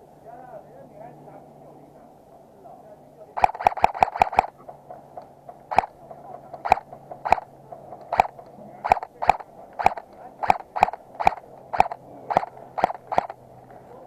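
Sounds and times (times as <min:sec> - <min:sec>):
airsoft gun firing single shots: 0:03.4 - 0:04.5, 0:05.6 - 0:06.0, 0:06.6 - 0:07.5, 0:08.1 - 0:13.4.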